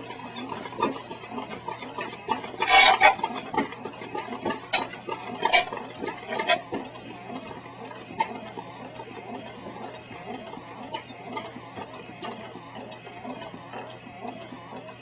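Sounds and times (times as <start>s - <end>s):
hard objects clattering: 0.0s - 7.0s.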